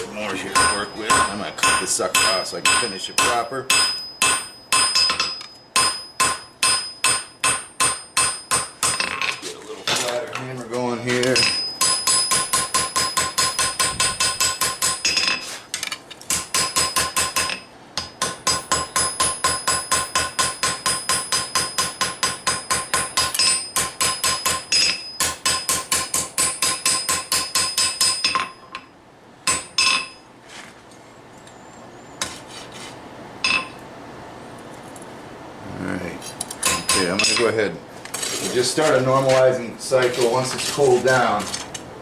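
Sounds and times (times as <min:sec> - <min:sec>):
hammer ringing on anvil: 0:00.5 - 0:09.2, 0:11.4 - 0:15.4, 0:16.6 - 0:28.9, 0:29.5 - 0:30.2, 0:33.4 - 0:33.8, 0:36.6 - 0:37.5.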